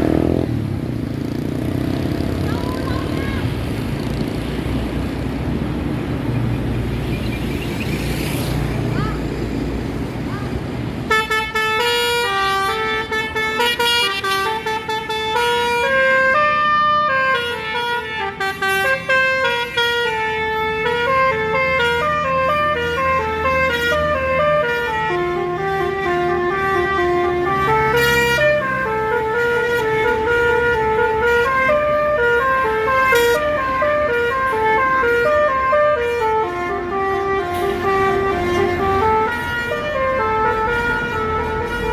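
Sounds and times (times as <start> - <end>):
bus horn playing melody: 11.0 - 41.9.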